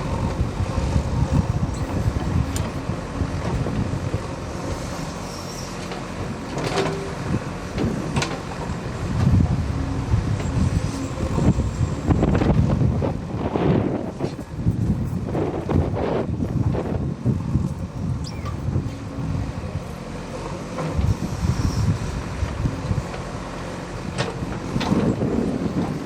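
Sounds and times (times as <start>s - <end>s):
wind buffeting microphone: 0.0s - 5.2s, 6.0s - 20.0s, 20.7s - 26.0s
diesel engine running: 0.0s - 26.0s.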